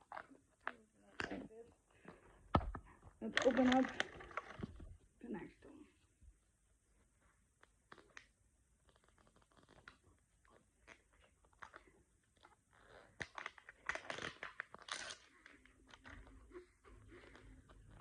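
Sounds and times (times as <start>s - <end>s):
wrapping crinkling and tearing: 3.2s - 4.8s, 10.8s - 16.2s.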